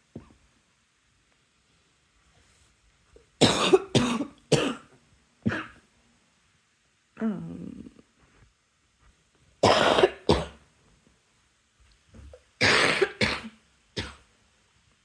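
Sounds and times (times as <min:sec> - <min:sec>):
person coughing: 0:03.4 - 0:04.9, 0:09.6 - 0:10.6, 0:12.6 - 0:14.2.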